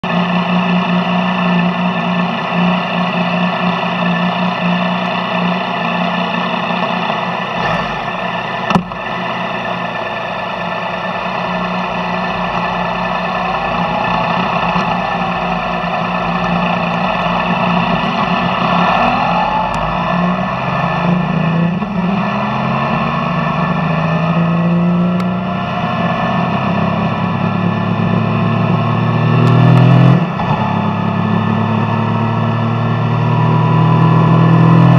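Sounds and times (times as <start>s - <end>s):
motorcycle engine revving: 0.0s - 34.9s.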